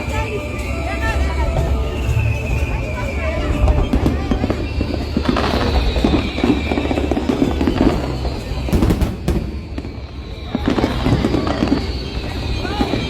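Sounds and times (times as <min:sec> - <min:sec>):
fireworks booming and crackling: 0:00.0 - 0:13.0
music: 0:00.0 - 0:13.0
sharp firework cracks: 0:05.2 - 0:13.0.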